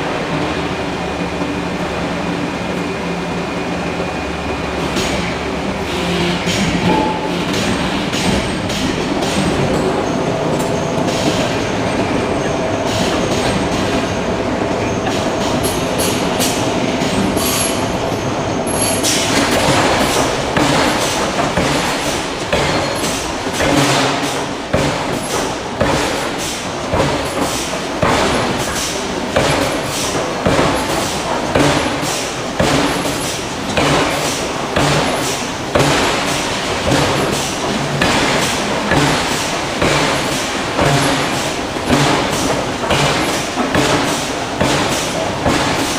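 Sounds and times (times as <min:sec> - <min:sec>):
forging hammer striking steel: 0:06.8 - 0:08.3.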